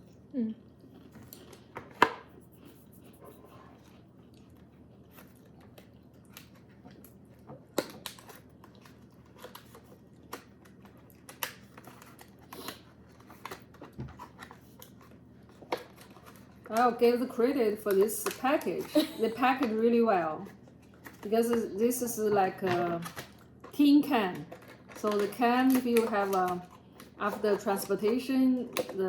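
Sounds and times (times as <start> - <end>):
wafer cookies crunching: 0.0 - 29.0
packaging rustling: 5.0 - 21.7.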